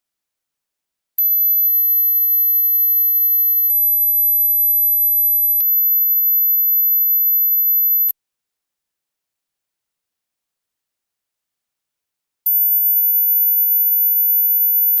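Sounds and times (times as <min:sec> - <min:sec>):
high-pitched sine tone: 0:01.2 - 0:08.1, 0:12.5 - 0:15.0.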